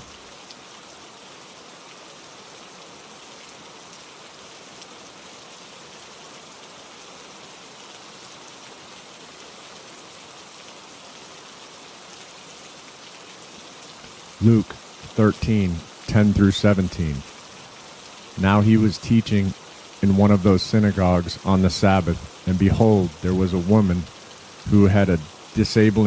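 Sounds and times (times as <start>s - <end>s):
steady rainfall: 0.0s - 26.0s.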